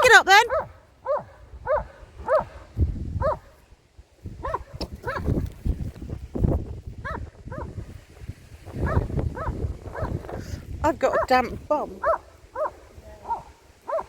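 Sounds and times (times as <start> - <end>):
dog barking: 0.5 - 3.6, 4.4 - 5.3, 7.0 - 7.8, 8.8 - 10.2, 12.0 - 14.0.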